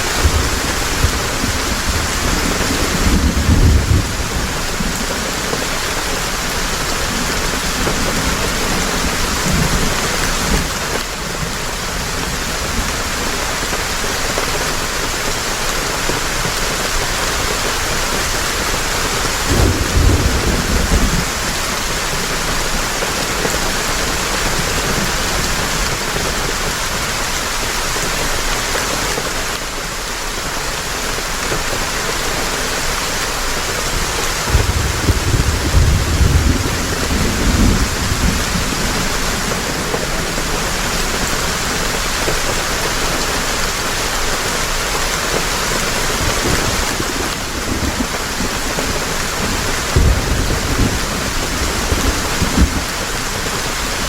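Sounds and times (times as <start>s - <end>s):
thunder rumbling: 0.0s - 13.6s, 19.4s - 26.1s, 33.9s - 42.8s, 45.6s - 54.0s
heavy rain: 0.0s - 54.0s.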